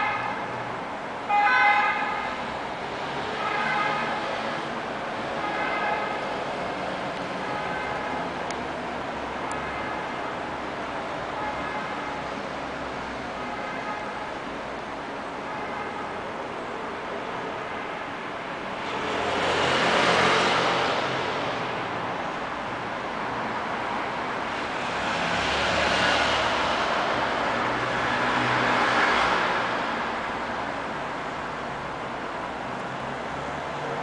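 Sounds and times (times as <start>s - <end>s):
steady city traffic: 0.0s - 34.0s
vehicles passing: 0.0s - 34.0s.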